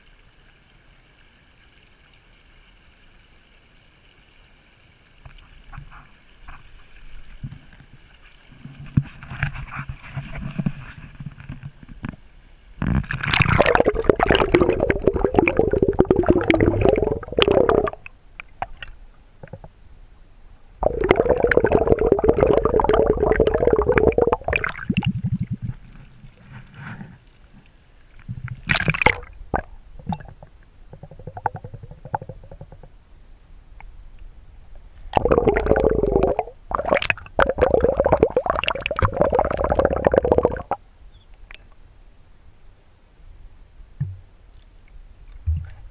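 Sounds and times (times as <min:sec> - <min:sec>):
water sloshing and splashing: 0:12.8 - 0:19.7
water gurgling: 0:12.8 - 0:19.8, 0:20.8 - 0:32.9, 0:35.0 - 0:40.8.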